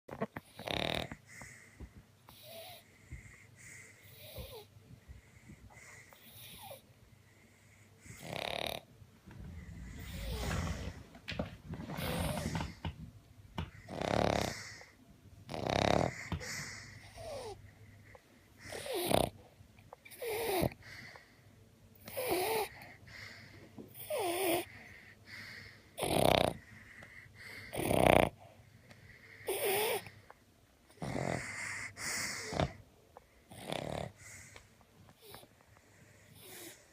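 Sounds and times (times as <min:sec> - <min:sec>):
dog snoring with wheezing whistle: 0:00.4 - 0:01.6, 0:08.0 - 0:12.9, 0:13.7 - 0:14.9, 0:15.5 - 0:17.6, 0:18.6 - 0:19.4, 0:26.0 - 0:26.8, 0:27.5 - 0:28.4, 0:29.4 - 0:30.1, 0:30.9 - 0:32.8, 0:33.5 - 0:34.6.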